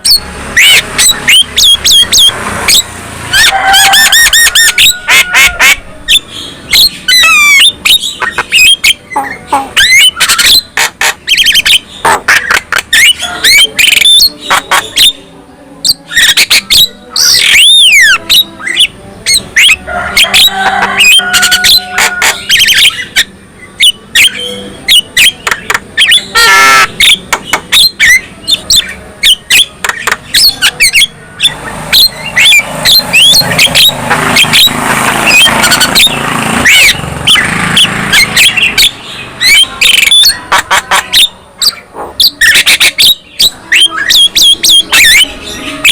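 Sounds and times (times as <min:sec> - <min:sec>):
myna bird singing: 0:00.0 - 0:45.9.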